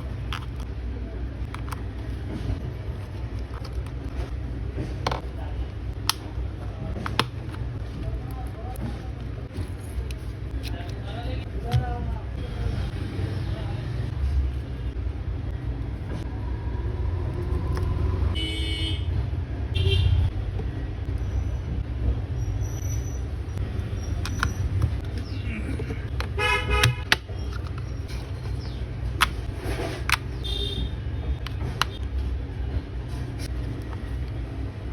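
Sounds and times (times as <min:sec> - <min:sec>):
road traffic rumble: 0:00.0 - 0:34.9
vehicle horns tooting: 0:18.4 - 0:19.1, 0:26.4 - 0:27.1.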